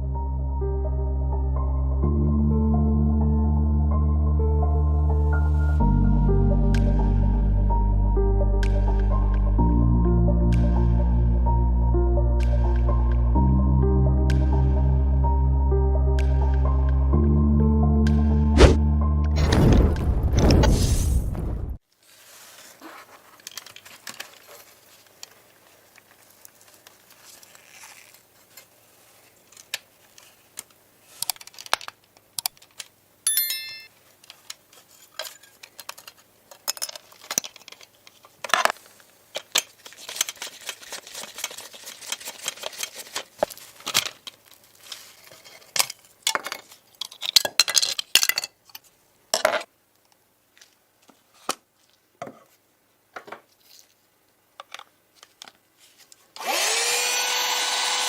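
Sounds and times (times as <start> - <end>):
metal tools clinking and tapping: 33.3 - 33.9, 35.2 - 37.8
ringing metallic clink: 33.3 - 33.9.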